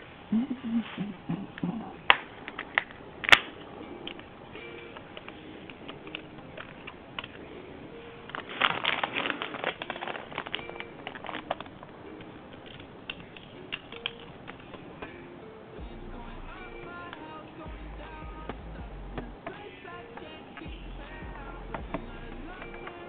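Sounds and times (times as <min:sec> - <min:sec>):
faint background music: 0:00.0 - 0:23.0
parts and packaging clicking and rustling: 0:02.1 - 0:04.3, 0:04.9 - 0:07.5, 0:08.2 - 0:15.2.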